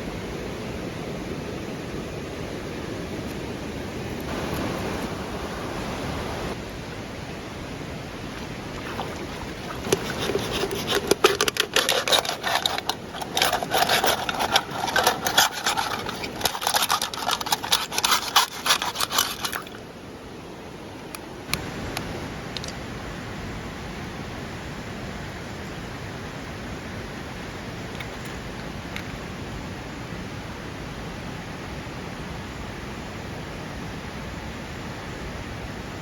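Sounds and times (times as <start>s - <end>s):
rapid scraping with sharp clicks: 9.0s - 19.8s.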